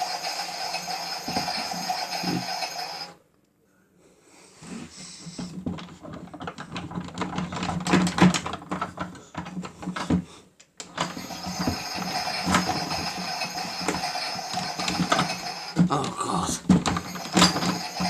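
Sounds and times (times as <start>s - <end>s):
toy washing machine clicks and knocks: 0.6s - 2.8s, 5.4s - 10.2s, 10.8s - 15.9s, 16.7s - 18.0s.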